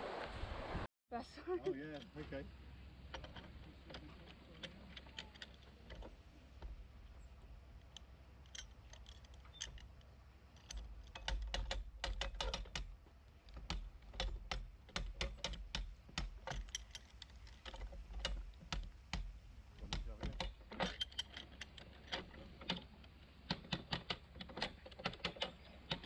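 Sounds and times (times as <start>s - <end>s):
metal ratchet clicking: 13.5s - 22.9s.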